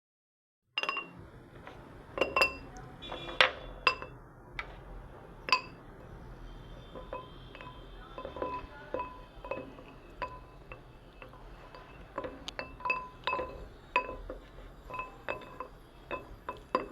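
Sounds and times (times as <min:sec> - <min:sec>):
slate pencils clinking: 0:05.4 - 0:06.2, 0:06.8 - 0:16.9.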